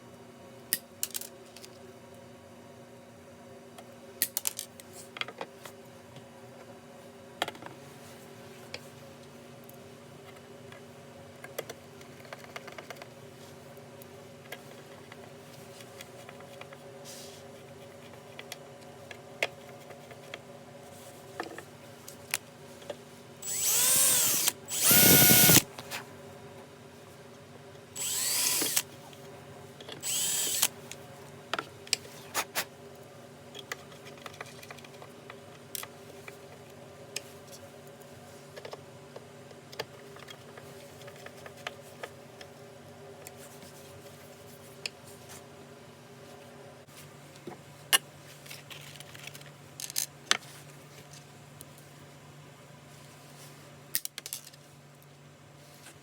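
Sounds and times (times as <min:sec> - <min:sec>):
faint steady hum: 0:00.0 - 0:56.0
power drill bursts: 0:23.4 - 0:25.6, 0:28.0 - 0:28.8, 0:30.0 - 0:30.7.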